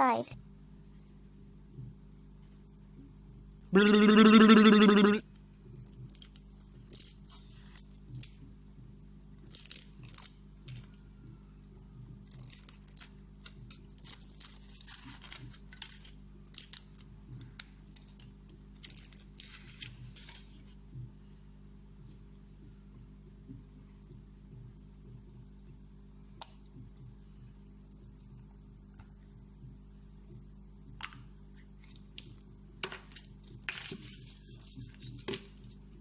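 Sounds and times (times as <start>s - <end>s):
foil wrapper crinkling and tearing: 6.0s - 8.4s, 9.4s - 10.9s, 12.2s - 20.8s, 33.0s - 35.8s.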